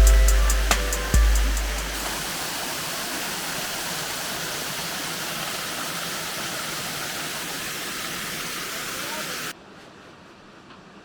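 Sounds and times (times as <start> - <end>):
waterfall roaring: 1.1 - 9.6.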